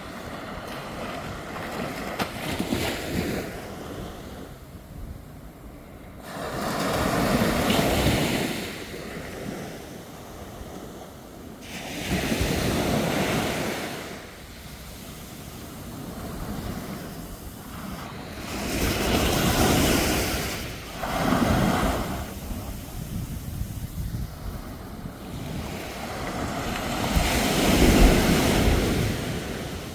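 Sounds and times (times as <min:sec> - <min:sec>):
sea waves breaking on beach: 0:06.2 - 0:29.9.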